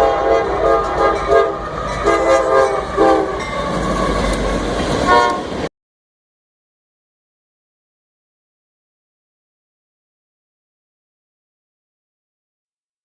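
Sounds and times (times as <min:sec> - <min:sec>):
locomotive air horn blasts: 0:00.0 - 0:05.7
passing train rumble: 0:00.0 - 0:05.7.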